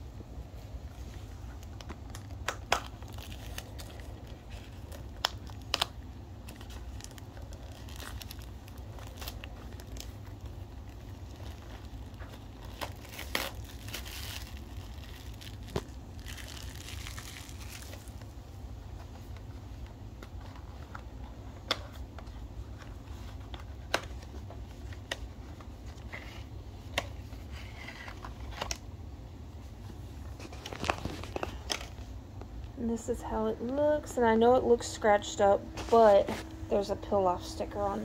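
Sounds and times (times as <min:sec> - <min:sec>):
packaging crinkling and tearing: 0:01.5 - 0:18.4, 0:30.3 - 0:32.1
packaging snaps and clicks: 0:01.6 - 0:18.3.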